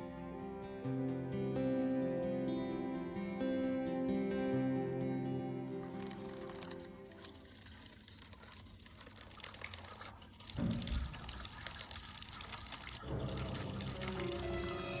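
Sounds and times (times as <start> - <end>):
running water hissing: 5.8 - 15.0.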